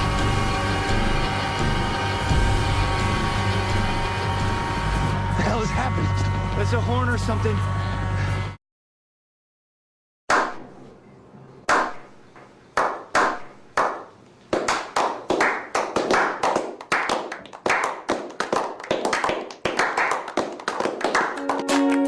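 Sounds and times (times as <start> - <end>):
hand clapping: 10.3 - 10.6, 11.7 - 12.1, 12.8 - 22.0.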